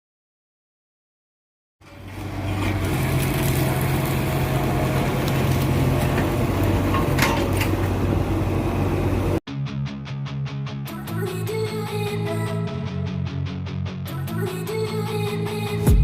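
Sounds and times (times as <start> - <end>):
diesel engine running: 1.8 - 9.4.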